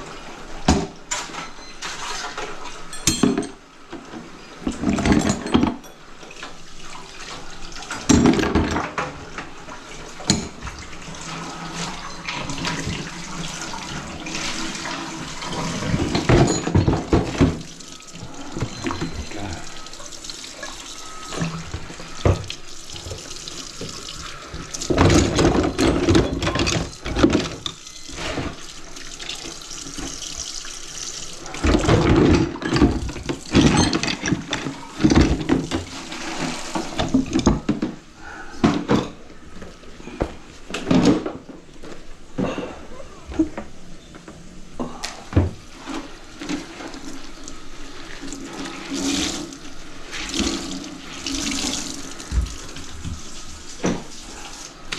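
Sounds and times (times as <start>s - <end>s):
water running from faucet into sink: 9.9s - 32.1s, 32.8s - 33.8s, 34.9s - 37.4s, 45.7s - 54.9s.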